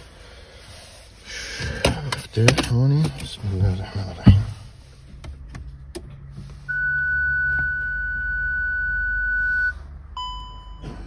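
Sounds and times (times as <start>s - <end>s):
high electronic beep: 6.7s - 10.9s
short lower beep: 6.7s - 11.0s.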